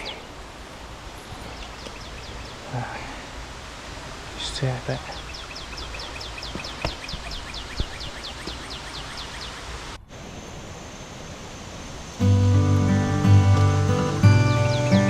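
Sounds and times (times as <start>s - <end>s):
bird trilling high notes: 12.2s - 15.0s.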